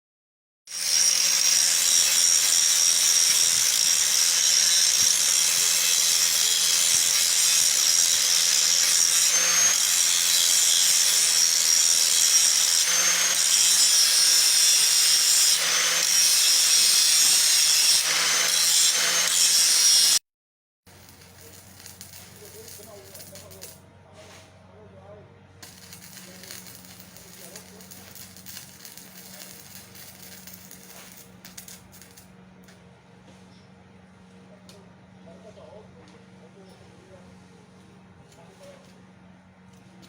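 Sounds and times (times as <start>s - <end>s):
power tool grinding: 0.7s - 20.2s, 20.9s - 23.8s, 25.6s - 32.3s.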